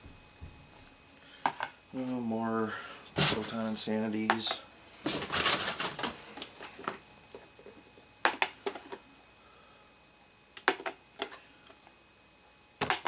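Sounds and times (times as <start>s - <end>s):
plastic discs clacking together: 8.2s - 9.0s, 10.6s - 11.4s.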